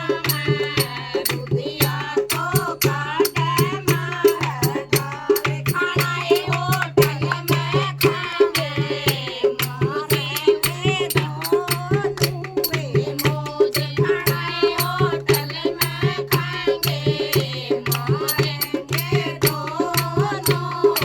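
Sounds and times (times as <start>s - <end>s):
percussion beat of sharp clicks: 0.0s - 21.0s.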